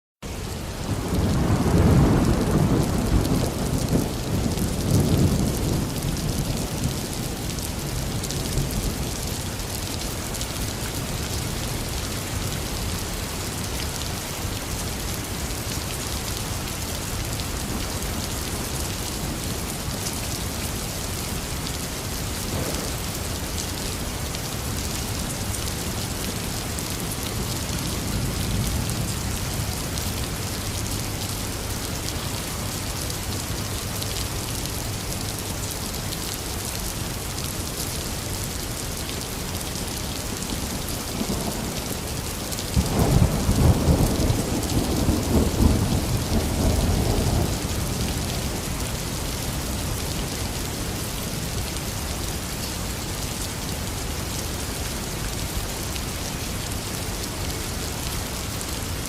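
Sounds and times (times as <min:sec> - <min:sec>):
heavy rain falling: 0:00.2 - 0:59.0
thunder rumbling: 0:22.5 - 0:23.4, 0:42.7 - 0:48.2.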